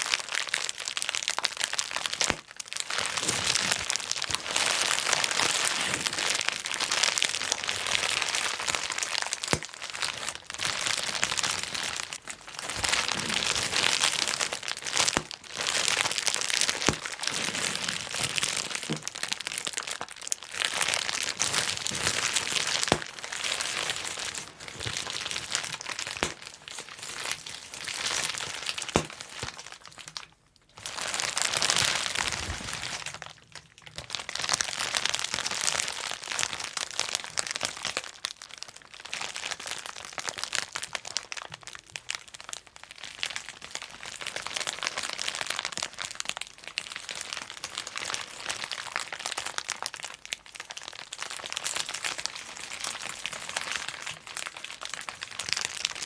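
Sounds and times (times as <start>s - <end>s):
bubble wrap crinkling: 0.0s - 56.0s
bubble wrap popping: 0.0s - 56.0s.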